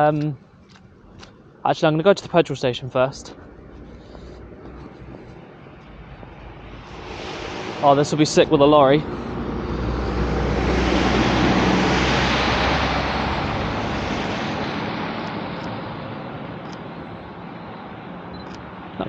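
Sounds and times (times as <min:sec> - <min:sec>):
low engine drone: 0:00.0 - 0:19.0
tyre hiss on wet road: 0:06.7 - 0:14.3.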